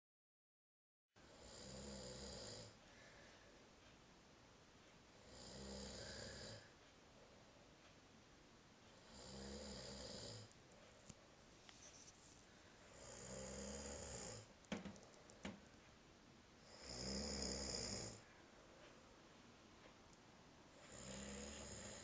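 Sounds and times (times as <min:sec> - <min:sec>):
person snoring: 0:01.3 - 0:02.8, 0:05.2 - 0:06.7, 0:09.0 - 0:10.5, 0:13.0 - 0:14.5, 0:16.6 - 0:18.2, 0:20.8 - 0:22.0.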